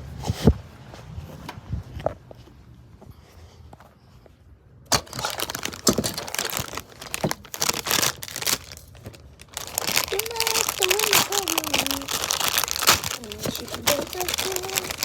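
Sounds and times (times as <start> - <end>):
plastic wrapping crinkling: 4.9 - 15.0.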